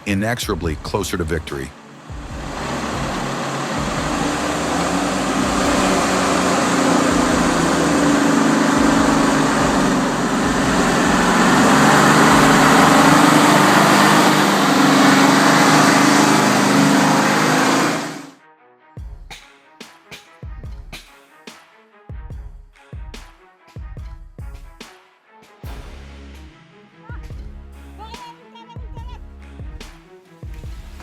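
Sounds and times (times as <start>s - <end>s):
engine running at high revs: 0.6s - 18.4s.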